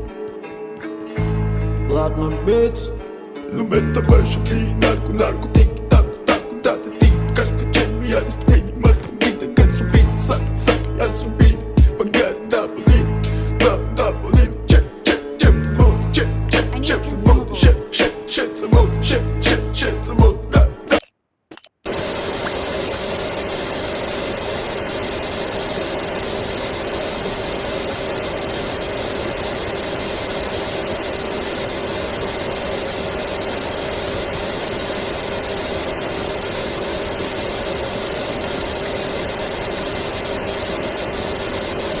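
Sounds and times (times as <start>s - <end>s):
vacuum cleaner running: 21.9s - 42.0s.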